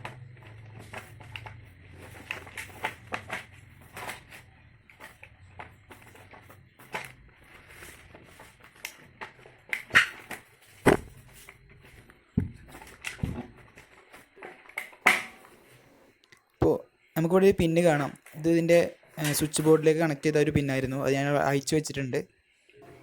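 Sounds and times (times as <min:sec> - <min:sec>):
dull thumps: 0:10.8 - 0:11.2, 0:12.4 - 0:13.5.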